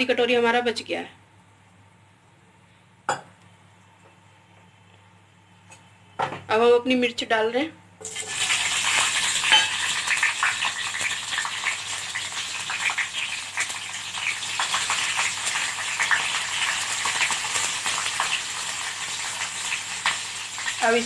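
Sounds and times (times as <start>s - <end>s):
chillies sizzling in hot oil: 8.0s - 21.0s.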